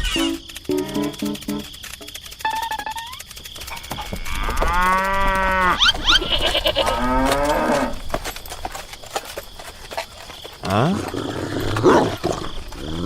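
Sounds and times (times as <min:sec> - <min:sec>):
long animal-like calls: 0:04.1 - 0:08.0.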